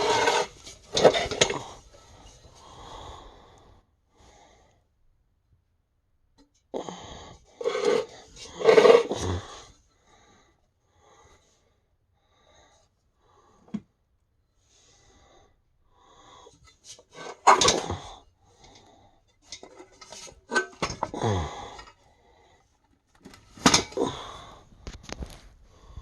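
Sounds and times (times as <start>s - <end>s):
metal fan scraping and knocking: 0.0s - 1.7s, 7.6s - 9.4s, 16.7s - 18.1s, 19.4s - 21.9s.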